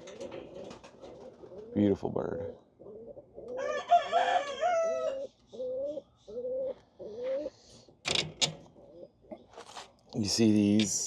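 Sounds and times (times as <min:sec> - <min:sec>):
birds calling: 0:04.8 - 0:08.0.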